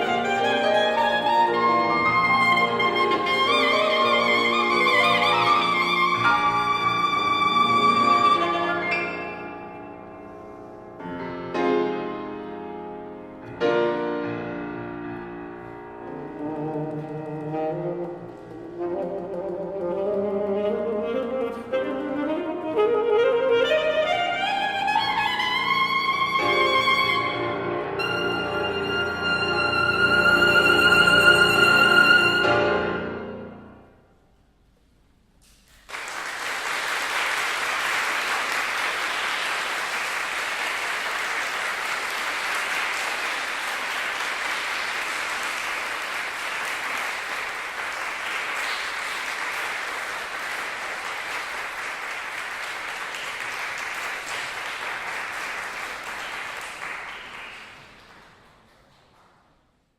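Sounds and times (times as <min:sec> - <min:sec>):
alto saxophone: 0:00.0 - 0:09.5, 0:16.0 - 0:33.4
piano: 0:00.0 - 0:34.7
audience applause: 0:35.7 - 0:59.4.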